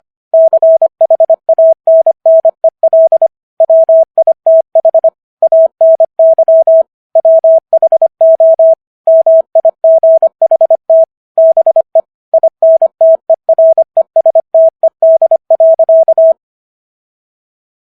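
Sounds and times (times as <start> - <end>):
morse code beeps: 0.4 - 16.4.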